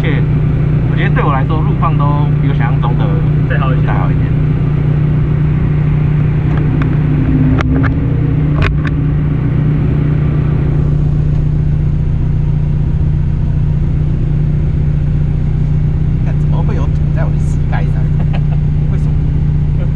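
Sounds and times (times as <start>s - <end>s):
rally car engine droning: 0.0s - 19.9s.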